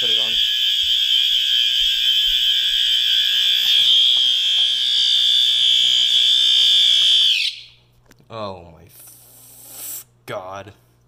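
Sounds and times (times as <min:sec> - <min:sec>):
fire alarm horn tone: 0:00.0 - 0:07.8.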